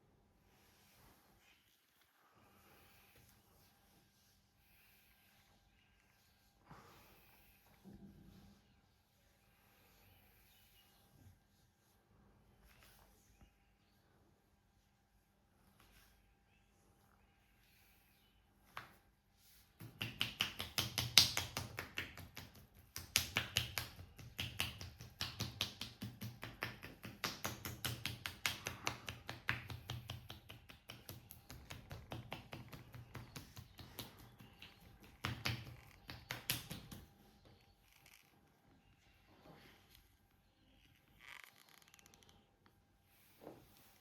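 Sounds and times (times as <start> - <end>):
rapid slaps on a back: 19.7 - 37.2.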